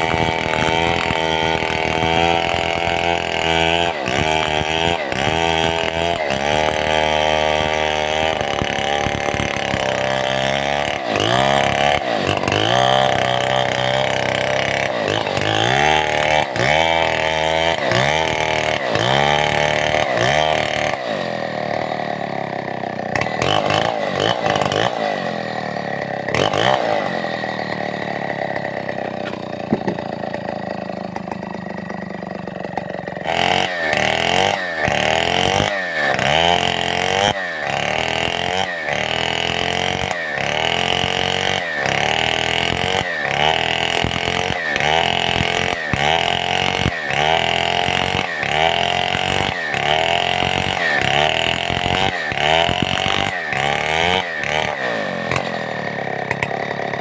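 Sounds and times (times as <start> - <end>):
chainsaw sawing timber: 0.0 - 57.0.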